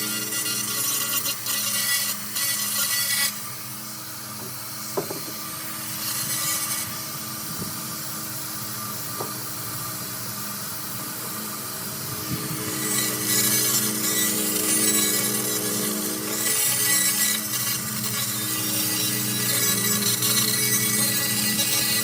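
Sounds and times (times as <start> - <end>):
laser cleaner rasping hiss: 0.0 - 22.0
machine hum: 0.0 - 22.0.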